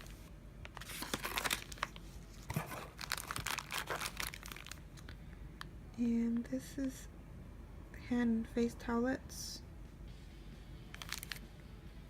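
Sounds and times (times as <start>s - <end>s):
packaging rustling and crackling: 0.0s - 5.2s, 10.9s - 11.4s.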